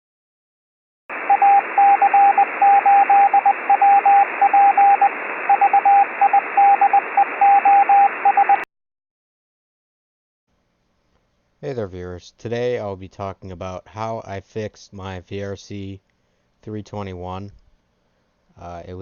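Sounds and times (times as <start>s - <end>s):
radio static hiss: 1.1s - 8.6s
morse code tone: 1.2s - 8.6s.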